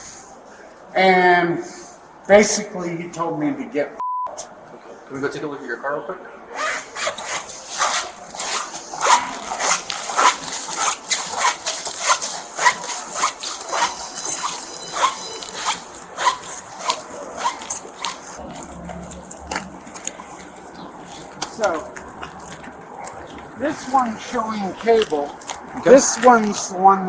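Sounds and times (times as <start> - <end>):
footsteps walking: 6.8 - 26.9
gear rustling and clacking: 6.9 - 27.0.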